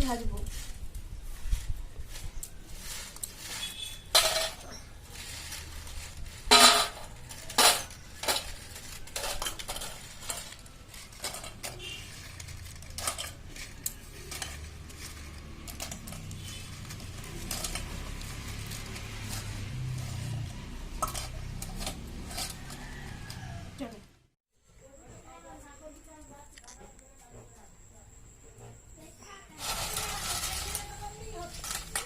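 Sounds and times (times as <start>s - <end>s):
metal kitchenware clanking: 3.3s - 23.5s, 29.6s - 32.0s.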